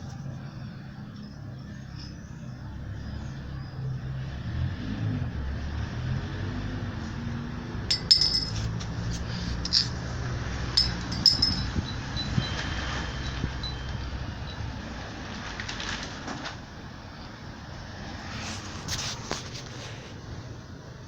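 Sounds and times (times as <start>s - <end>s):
light clinks: 7.9s - 10.0s, 10.7s - 12.3s.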